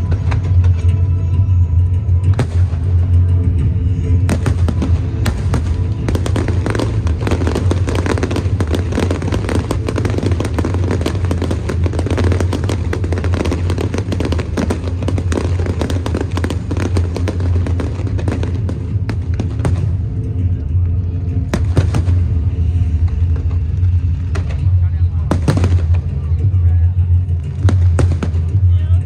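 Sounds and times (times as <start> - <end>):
fireworks crackling and popping: 0.0 - 29.0
low rumble: 0.0 - 29.0.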